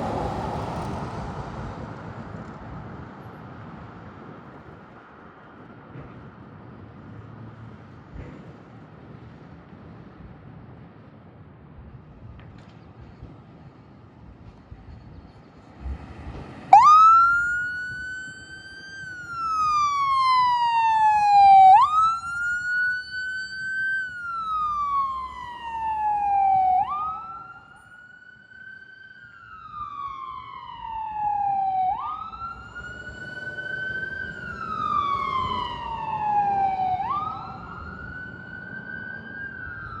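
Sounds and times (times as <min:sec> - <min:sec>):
low vehicle rumble: 0:00.0 - 0:40.0
ambulance siren wailing: 0:16.7 - 0:40.0.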